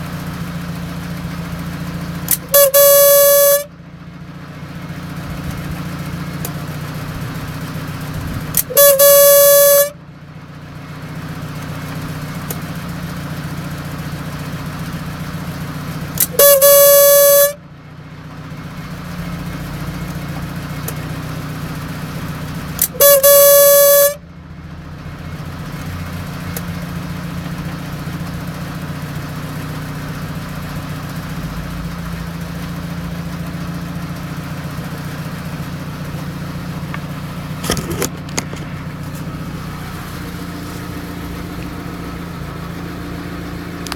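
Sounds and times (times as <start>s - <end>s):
rotary engine idling: 0.0s - 43.9s
loud honking tone: 1.7s - 4.3s, 8.0s - 10.2s, 16.1s - 17.8s, 22.7s - 24.4s, 32.4s - 43.4s.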